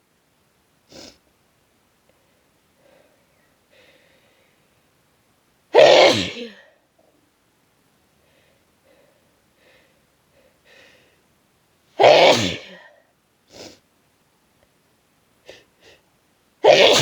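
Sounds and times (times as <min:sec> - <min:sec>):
person sneezing: 0:05.8 - 0:06.7, 0:12.0 - 0:13.0, 0:16.6 - 0:17.0.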